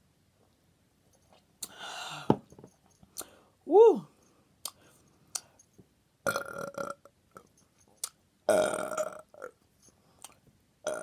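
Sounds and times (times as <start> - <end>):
person burping: 6.3 - 7.0, 8.5 - 9.5.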